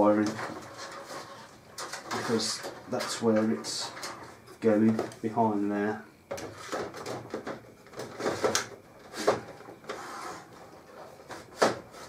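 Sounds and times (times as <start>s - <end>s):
plastic and metal clatter: 0.0s - 5.3s, 6.3s - 12.0s.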